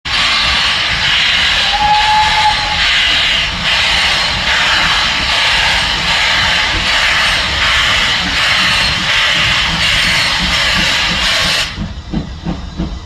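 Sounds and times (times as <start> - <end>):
steam locomotive passing: 0.0 - 13.0.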